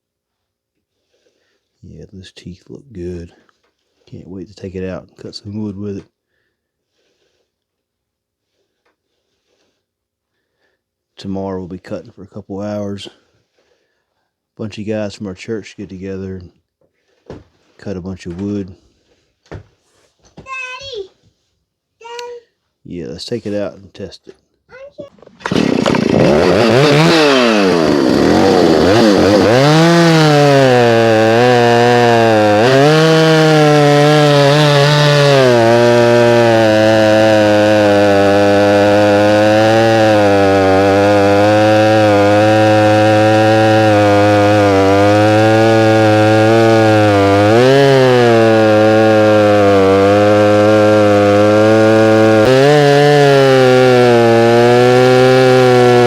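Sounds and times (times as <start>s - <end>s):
chainsaw cutting wood: 8.5s - 9.9s, 15.8s - 21.1s, 22.0s - 22.4s, 24.7s - 56.0s.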